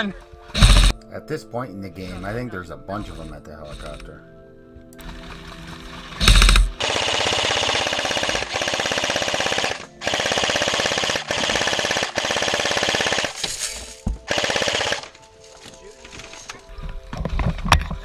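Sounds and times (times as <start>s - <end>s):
airsoft rifle full-auto bursts: 0.6s - 1.0s, 5.0s - 13.4s, 14.3s - 15.2s.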